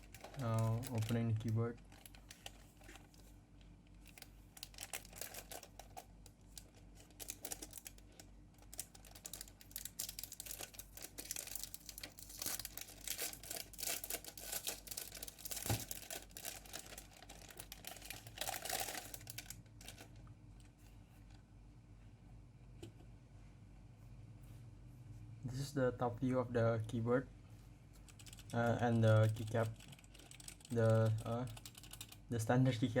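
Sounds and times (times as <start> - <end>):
plastic wrapping crinkling: 0.0 - 3.3, 4.0 - 20.2, 28.0 - 32.2.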